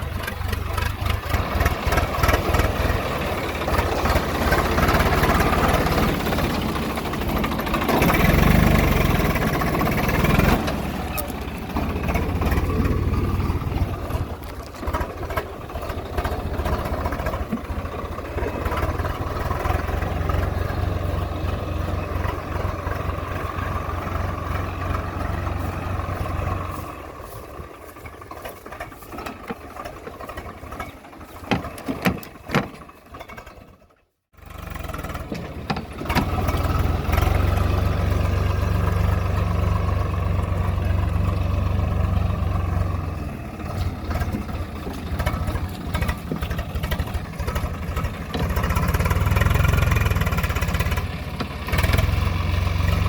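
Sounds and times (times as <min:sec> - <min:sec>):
tractor diesel engine running: 0:00.0 - 0:53.0
sharp knocks: 0:31.5 - 0:32.9.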